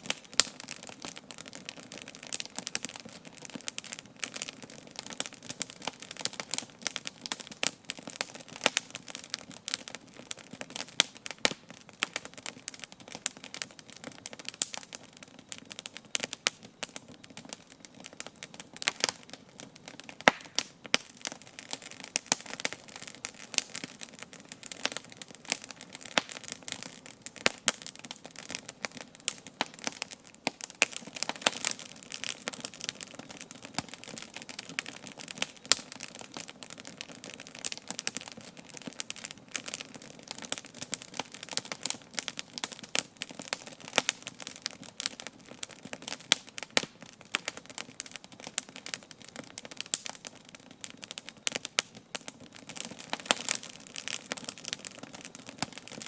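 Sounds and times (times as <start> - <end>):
campfire crackling: 0.0 - 56.0.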